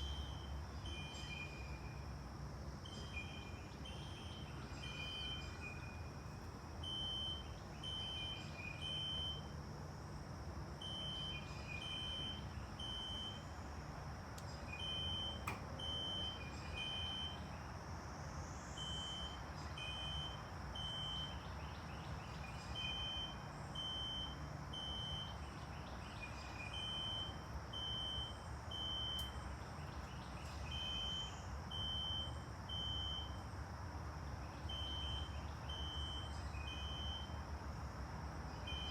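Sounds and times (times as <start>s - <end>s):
fire alarm horn beeps: 6.8s - 9.5s, 10.8s - 13.5s, 14.7s - 17.5s, 18.8s - 21.5s, 22.7s - 25.5s, 26.5s - 29.4s, 30.7s - 33.5s, 34.7s - 37.4s, 38.7s - 38.9s.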